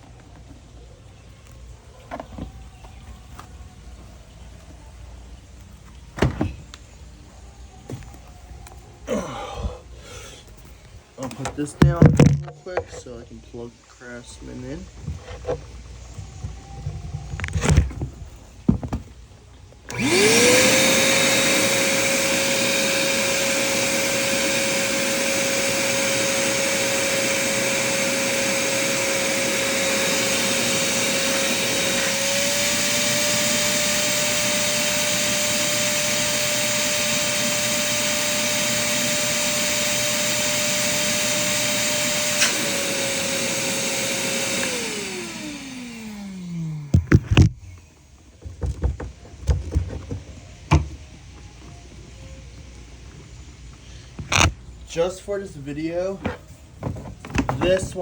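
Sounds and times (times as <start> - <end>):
shop vac motor whine: 19.8 - 51.8
shop vac switch: 19.9 - 47.6.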